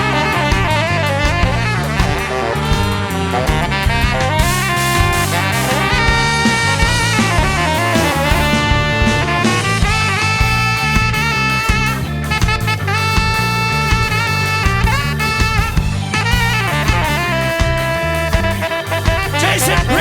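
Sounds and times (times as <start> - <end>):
drum kit: 0.0 - 20.0
electric bass: 0.0 - 20.0
organ: 0.0 - 20.0
saxophone and horns: 0.0 - 20.0.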